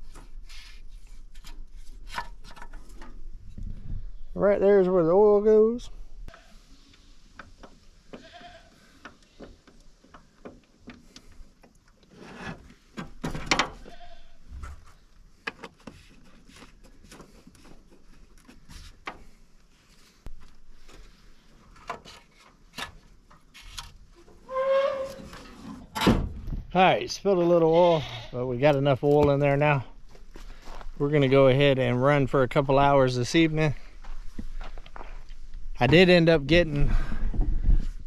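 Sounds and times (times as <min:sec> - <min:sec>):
farm animals bleating: 0:08.1 - 0:09.0, 0:13.8 - 0:14.4, 0:27.6 - 0:28.4.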